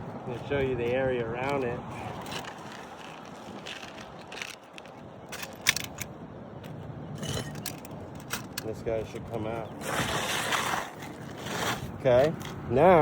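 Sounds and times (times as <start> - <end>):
roof shingles crackling and scraping: 0.8 - 5.6, 9.6 - 12.8.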